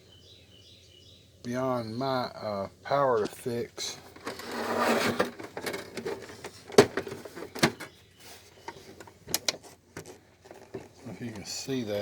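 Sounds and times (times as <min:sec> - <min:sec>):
vcr scraping on a surface: 0:04.0 - 0:07.5.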